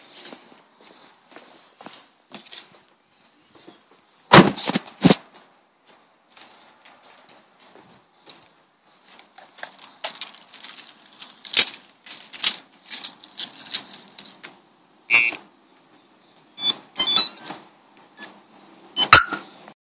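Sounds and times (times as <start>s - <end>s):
clicks and rustling: 9.0s - 14.6s.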